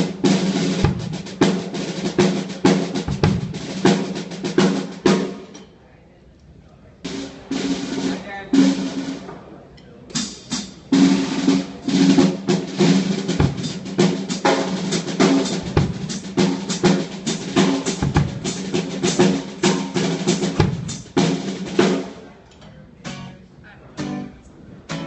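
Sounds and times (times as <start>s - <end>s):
snare and bass drum hits: 0.0s - 5.5s, 10.2s - 22.2s.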